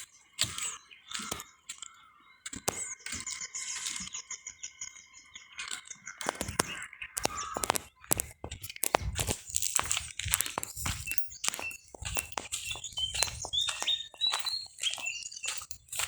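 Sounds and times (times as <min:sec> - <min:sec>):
crunching clicks: 0:00.4 - 0:04.2, 0:05.6 - 0:16.0
birds chirping and singing: 0:04.1 - 0:16.0.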